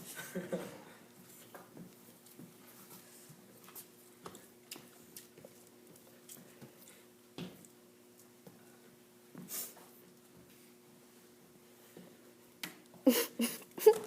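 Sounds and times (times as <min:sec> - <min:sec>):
people chewing oranges: 0:01.1 - 0:08.7.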